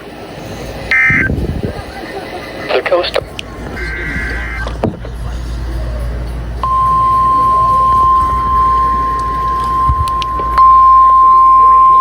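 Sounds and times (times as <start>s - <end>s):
steady warning alarm tone: 0.9s - 1.4s, 2.7s - 12.0s
radio hum and static: 0.9s - 1.8s, 2.6s - 5.3s.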